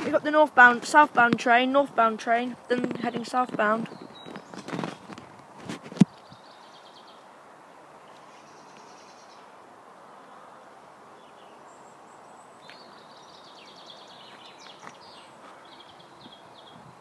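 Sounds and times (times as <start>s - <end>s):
open-air ambience hiss: 0.0s - 17.0s
small birds chirping: 0.0s - 17.0s.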